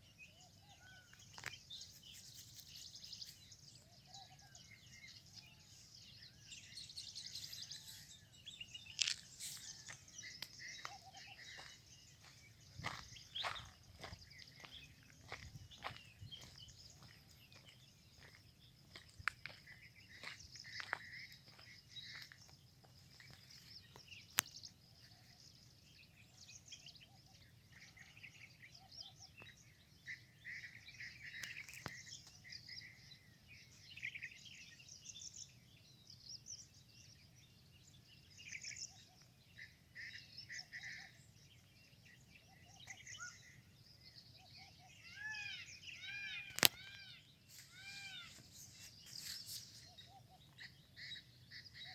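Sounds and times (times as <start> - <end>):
small birds chirping: 0.0 - 51.9
sharp clicks: 46.5 - 46.8.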